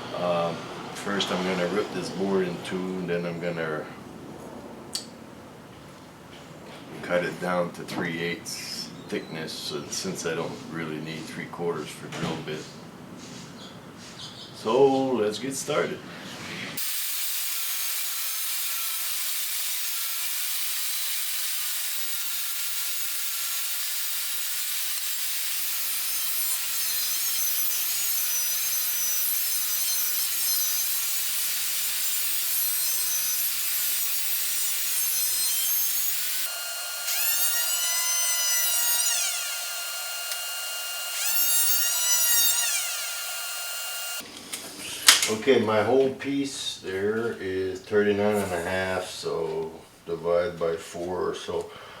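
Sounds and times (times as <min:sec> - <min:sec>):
power saw cutting wood: 0:00.0 - 0:03.6, 0:16.8 - 0:44.2.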